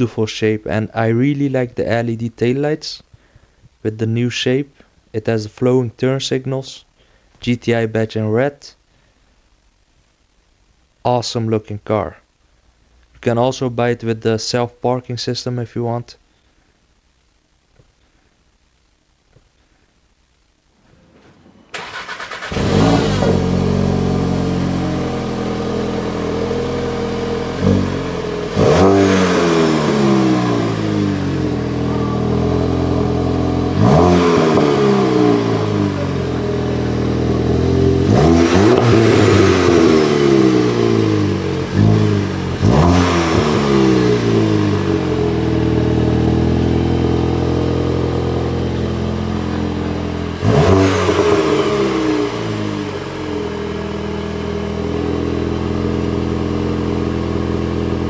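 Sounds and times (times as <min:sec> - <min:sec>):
car engine starting and revving: 0:21.6 - 0:58.0.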